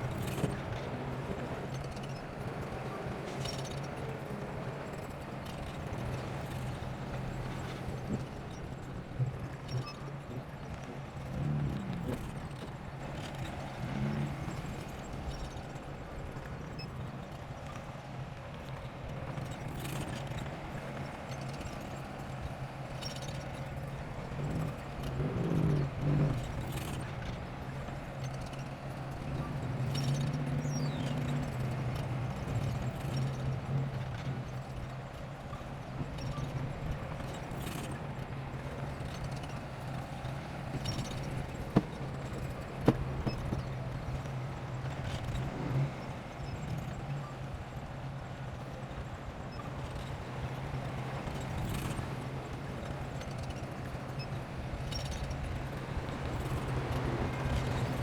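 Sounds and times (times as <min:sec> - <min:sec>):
steel crawler tracks clanking: 0:39.0 - 0:46.6.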